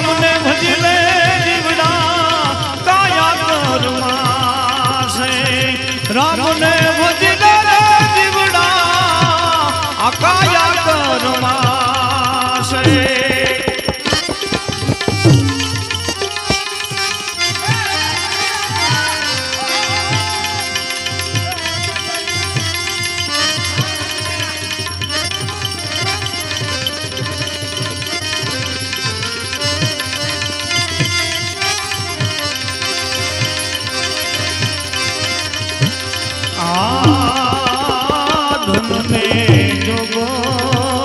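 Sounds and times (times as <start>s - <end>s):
tabla rhythm: 0.0s - 41.0s.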